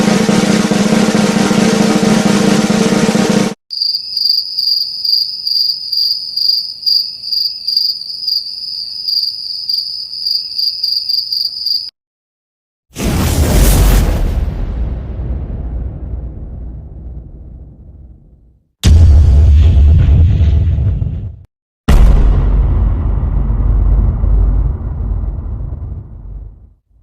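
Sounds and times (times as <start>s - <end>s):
snare drum roll: 0.0s - 3.6s
cricket chirping: 3.7s - 11.9s.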